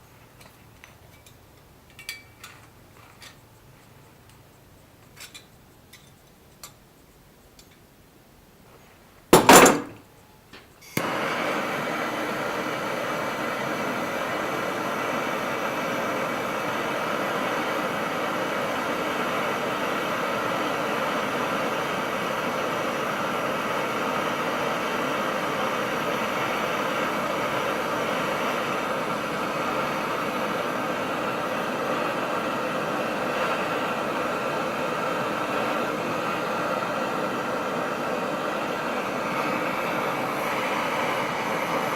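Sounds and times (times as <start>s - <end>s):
gas burner hissing: 9.3s - 41.9s.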